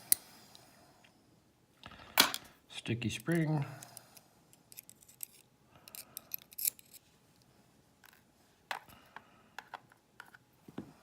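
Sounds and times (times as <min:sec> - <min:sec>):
small lock parts clicking: 0:04.6 - 0:07.0.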